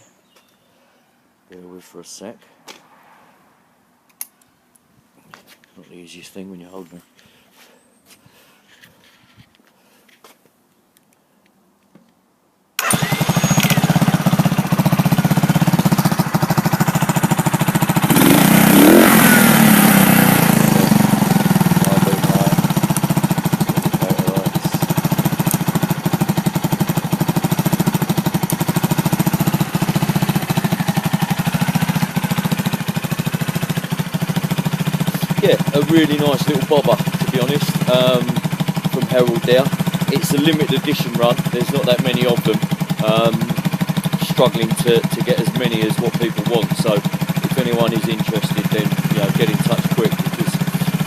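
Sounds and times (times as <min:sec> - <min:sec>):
motorcycle engine idling: 0:12.8 - 0:51.0.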